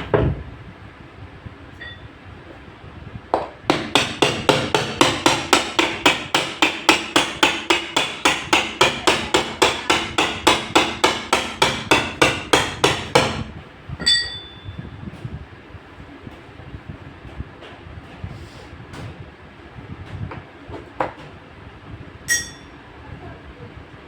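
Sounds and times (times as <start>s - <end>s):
ringing clink: 1.8s - 2.1s, 14.0s - 14.8s, 22.3s - 22.8s
rapid hammer strikes: 3.7s - 13.5s.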